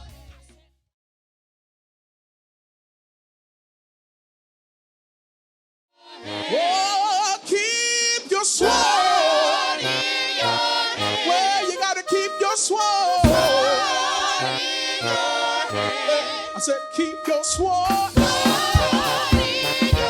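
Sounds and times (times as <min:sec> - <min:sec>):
gospel singing voices: 0:06.0 - 0:20.0
sharp drum hit: 0:13.3 - 0:13.6, 0:17.9 - 0:20.0.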